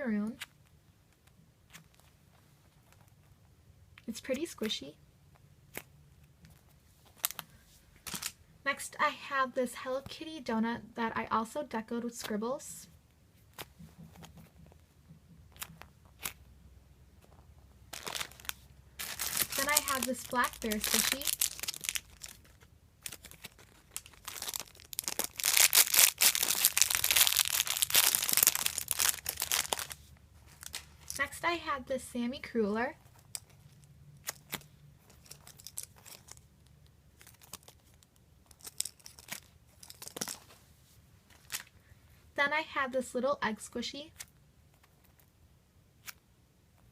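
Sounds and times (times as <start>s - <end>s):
foam toy clicks and crinkles: 18.0s - 31.3s, 33.1s - 40.4s.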